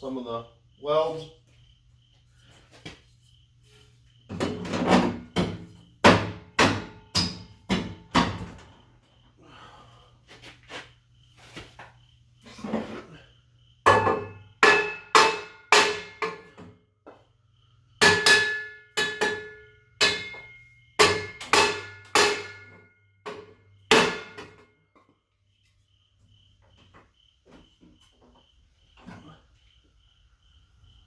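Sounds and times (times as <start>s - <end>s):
insects chirping: 0.0s - 31.0s
sheet metal clanging: 18.0s - 22.8s.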